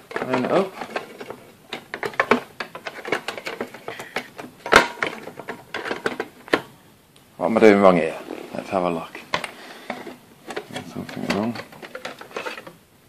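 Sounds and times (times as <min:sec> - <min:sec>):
plastic clicks and knocks: 0:00.0 - 0:06.7.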